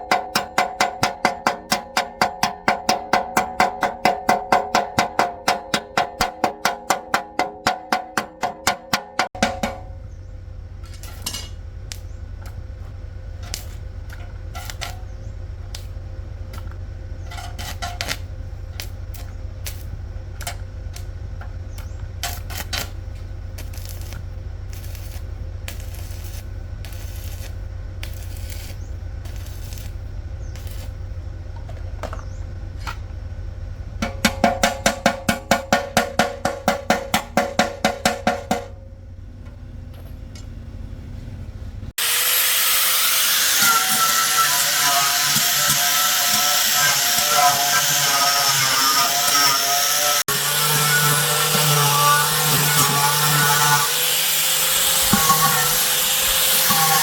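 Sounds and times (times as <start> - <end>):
steady low hum: 0.0 - 42.0
hand tools clinking on metal: 10.8 - 11.6, 16.6 - 18.2.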